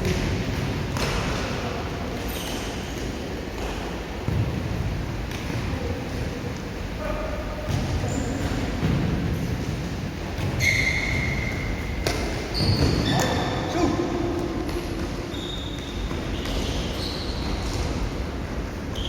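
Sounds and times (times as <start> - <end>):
shoes squeaking on court floor: 2.1 - 4.4, 7.7 - 9.0, 10.3 - 13.7, 14.4 - 18.0.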